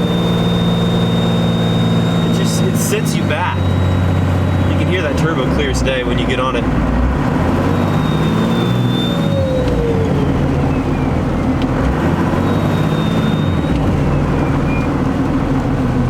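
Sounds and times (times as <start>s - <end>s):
turbo whistle: 0.0s - 4.7s, 7.6s - 11.2s, 12.2s - 14.9s
diesel engine pulling under throttle: 0.0s - 16.0s.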